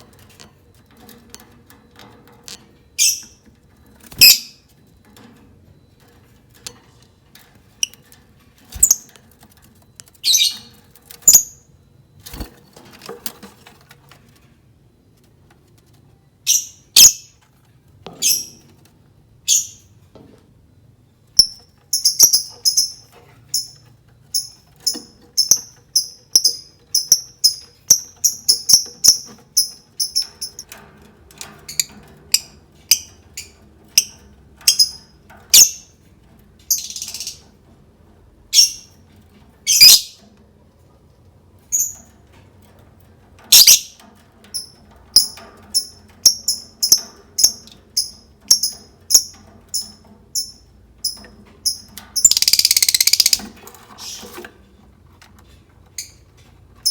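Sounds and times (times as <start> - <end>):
lovebird chirping: 3.0 - 3.4, 4.1 - 4.6, 8.7 - 9.1, 10.2 - 11.6, 16.4 - 17.3, 19.5 - 19.8, 21.4 - 23.0, 39.7 - 40.2, 43.5 - 43.9, 51.7 - 53.4.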